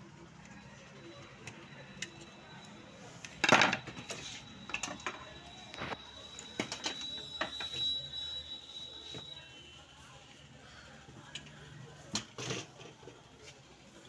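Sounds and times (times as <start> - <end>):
small hard parts clattering: 3.2 - 5.2.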